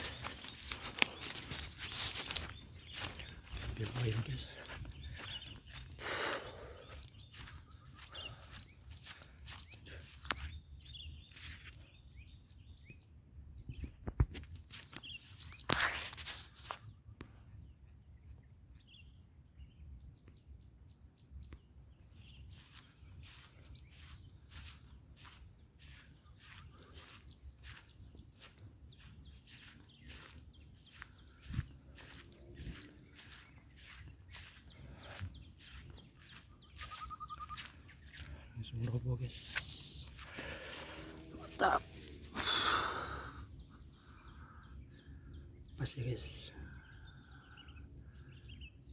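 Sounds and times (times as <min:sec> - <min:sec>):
light ticks and rustles: 0:00.0 - 0:05.7, 0:08.9 - 0:10.6
high insect drone: 0:00.0 - 0:48.9.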